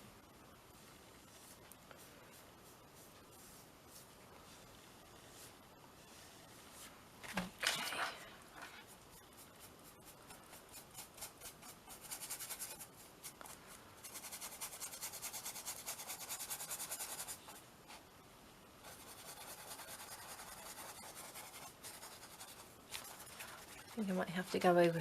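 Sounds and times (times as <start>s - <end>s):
scrubbing strokes on canvas: 1.2s - 7.0s, 18.9s - 24.8s.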